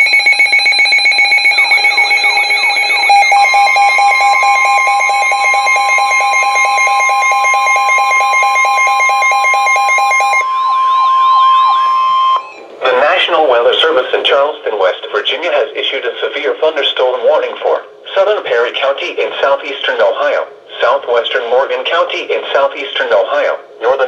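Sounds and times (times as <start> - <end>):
downward-sweeping chirps: 0.0 - 9.0, 10.2 - 12.9
fast pulsing beep: 0.0 - 12.6
steady high alarm tone: 0.0 - 13.2.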